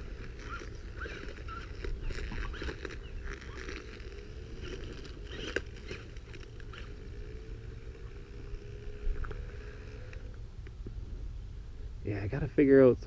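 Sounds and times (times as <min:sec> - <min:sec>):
crackles and clicks from brush: 0:00.0 - 0:08.2
small electric motor whining: 0:00.0 - 0:10.8.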